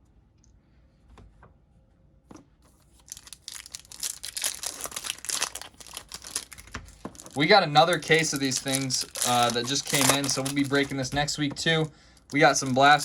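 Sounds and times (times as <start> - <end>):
foil wrapper tearing and crinkling: 3.0 - 11.1, 12.3 - 13.0.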